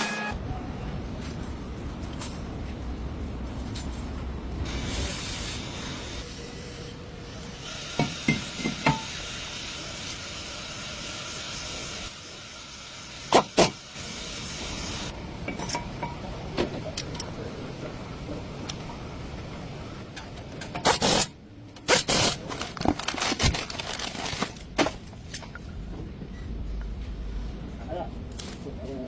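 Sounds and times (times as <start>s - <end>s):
spray hissing: 4.7s - 6.4s.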